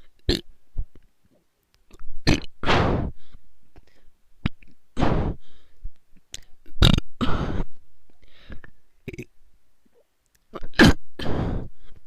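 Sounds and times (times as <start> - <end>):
bird making burping sounds: 2.2 - 2.6, 6.7 - 7.4, 9.0 - 9.4.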